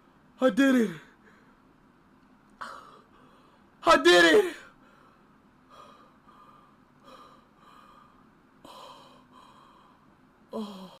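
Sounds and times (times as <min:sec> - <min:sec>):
man breathing hard: 0:02.6 - 0:03.8, 0:04.8 - 0:11.0.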